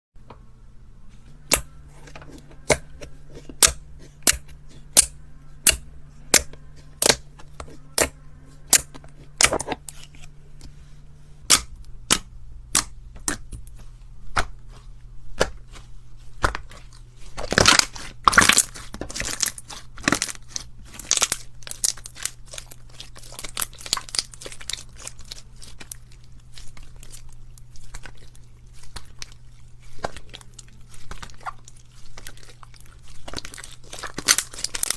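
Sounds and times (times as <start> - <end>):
crunchy slime squeezed by hand: 14.3 - 34.9.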